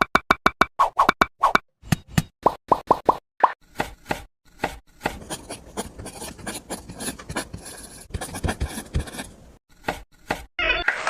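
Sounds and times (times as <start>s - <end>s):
hand tool scraping gritty surface: 4.0s - 9.4s.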